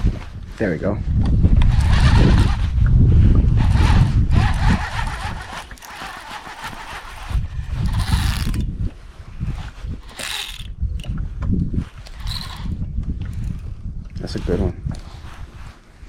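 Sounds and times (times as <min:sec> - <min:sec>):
wind buffeting microphone: 0:00.0 - 0:16.0
fishing reel cranking: 0:04.3 - 0:08.7, 0:10.0 - 0:11.1, 0:12.0 - 0:12.8.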